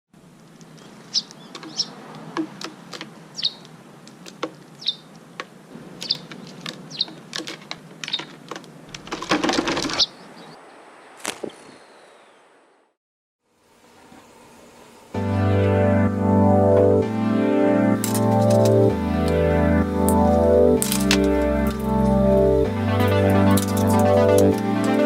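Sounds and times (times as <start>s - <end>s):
high bird chirps: 0.7s - 2.0s, 2.6s - 3.7s, 4.7s - 5.2s, 6.0s - 7.3s, 8.1s - 8.4s, 9.9s - 10.8s.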